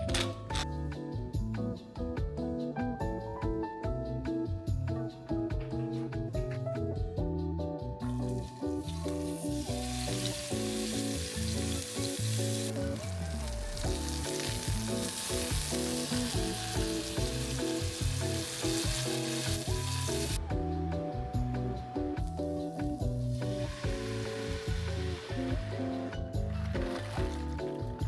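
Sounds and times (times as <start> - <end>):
background music: 0.0 - 28.0
food sizzling in a frying pan: 8.5 - 20.4, 23.2 - 25.6.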